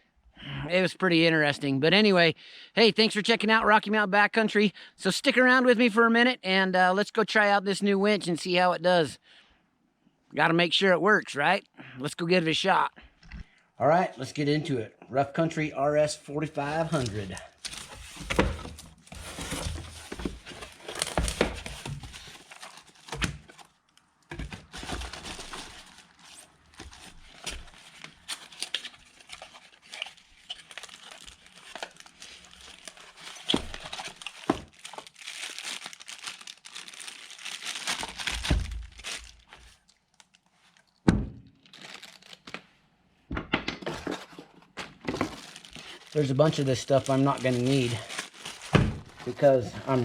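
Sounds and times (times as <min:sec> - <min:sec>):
packaging crinkling and tearing: 0:16.6 - 0:41.0, 0:41.6 - 0:42.6, 0:44.0 - 0:50.0.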